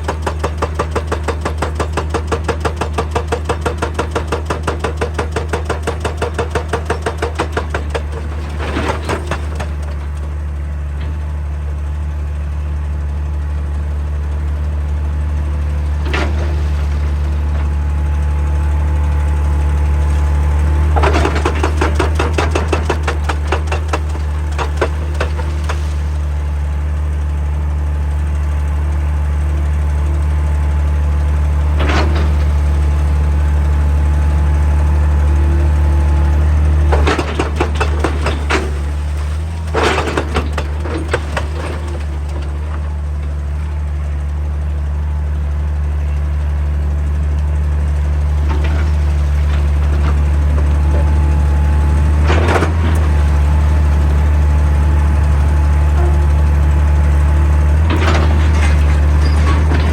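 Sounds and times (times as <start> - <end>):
hydraulic hammer pounding rock: 0.0 - 11.2, 15.7 - 18.8, 19.5 - 26.8, 31.6 - 33.3, 35.2 - 43.7, 48.2 - 59.9
diesel engine running: 0.0 - 59.9.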